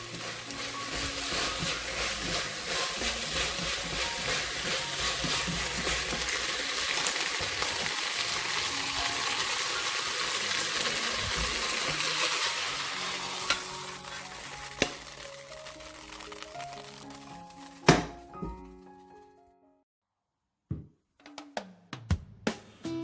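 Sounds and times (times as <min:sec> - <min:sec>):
spatula scraping a wok: 0:00.0 - 0:07.9, 0:10.2 - 0:17.4
food sizzling in a wok: 0:00.0 - 0:18.0.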